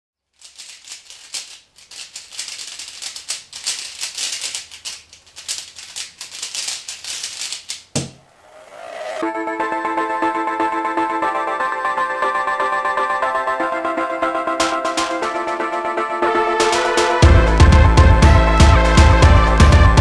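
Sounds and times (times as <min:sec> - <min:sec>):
puzzle cube clicking turns: 0:00.3 - 0:08.8
heavy thump: 0:07.9 - 0:08.3.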